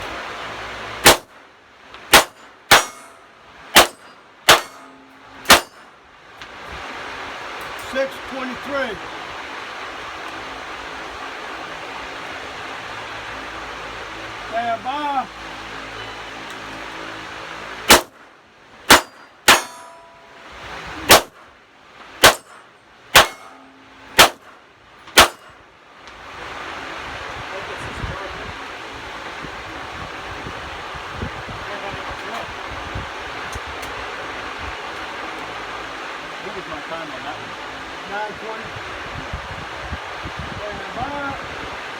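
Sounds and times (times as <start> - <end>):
pistol shots: 1.0 - 1.3, 2.1 - 3.1, 3.7 - 5.8, 17.9 - 18.2, 18.9 - 20.0, 21.1 - 21.4, 22.2 - 22.6, 23.2 - 24.6, 25.2 - 25.5.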